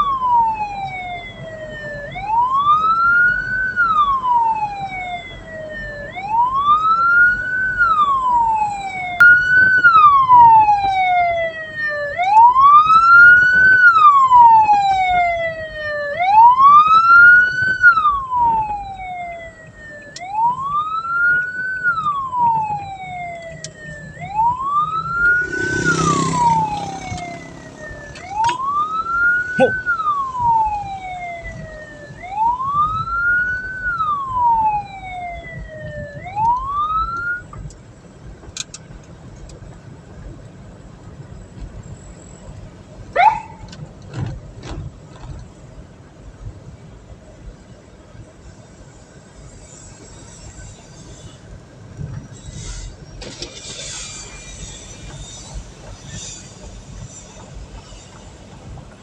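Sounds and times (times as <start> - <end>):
siren wailing: 0.0 - 37.5.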